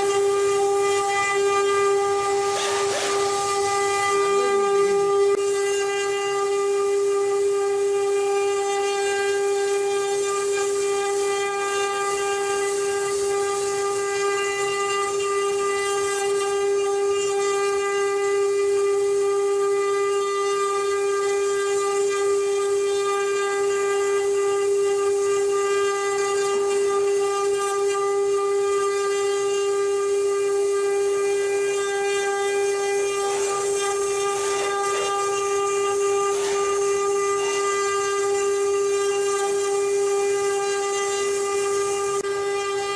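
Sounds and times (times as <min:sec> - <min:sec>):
router cutting wood: 0:00.0 - 0:42.9
router spindle whine: 0:00.0 - 0:42.9
rough scrapes: 0:01.2 - 0:05.1.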